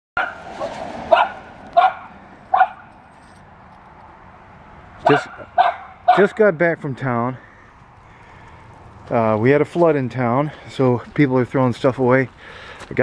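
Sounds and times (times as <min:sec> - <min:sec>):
dog barking: 0:00.2 - 0:02.9, 0:05.0 - 0:06.4.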